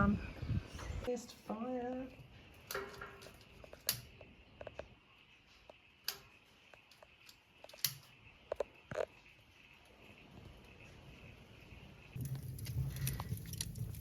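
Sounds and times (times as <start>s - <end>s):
wood fire crackling and popping: 2.5s - 5.0s, 5.8s - 9.2s, 12.1s - 14.0s.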